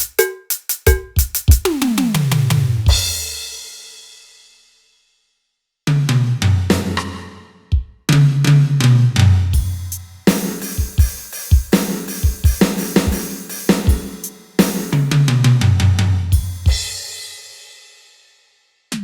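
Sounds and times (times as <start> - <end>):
electronic drum pattern: 0.0 - 3.3, 9.6 - 15.4
cymbal ringing out: 2.9 - 4.1.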